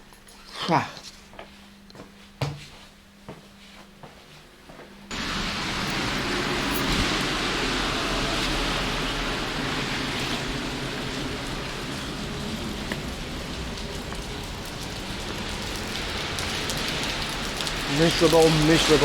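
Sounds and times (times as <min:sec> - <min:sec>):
heavy rain falling: 0:05.1 - 0:19.0.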